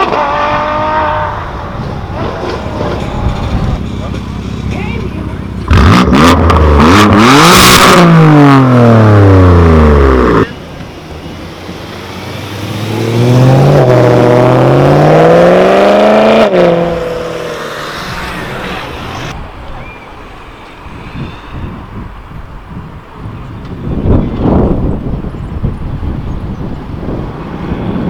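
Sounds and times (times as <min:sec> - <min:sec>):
car engine accelerating with gear change: 0:00.0 - 0:19.4.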